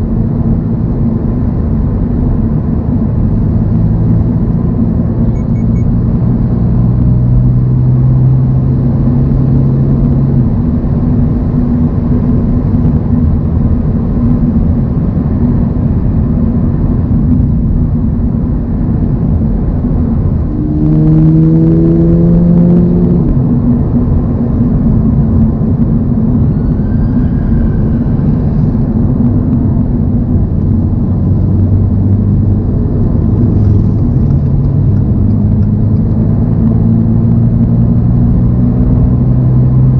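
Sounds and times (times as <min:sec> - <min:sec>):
car engine at highway revs: 0:00.0 - 0:39.9
road noise: 0:00.0 - 0:39.9.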